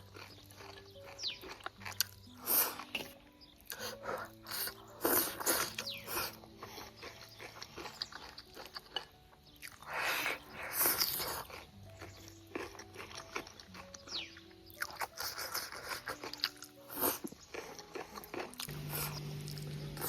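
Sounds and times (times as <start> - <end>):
crunchy chewing of crisp food: 0.0 - 20.0
soft background music: 0.0 - 20.0.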